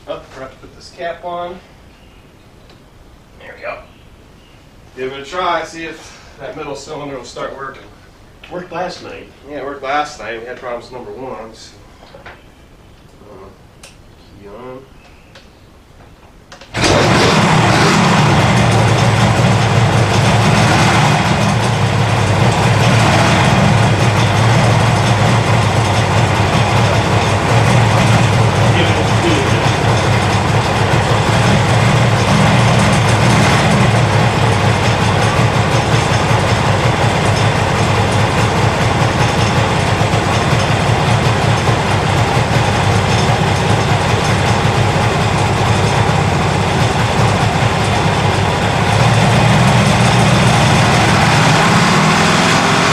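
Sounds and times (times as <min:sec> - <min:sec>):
motorcycle engine idling: 0:16.7 - 0:51.7.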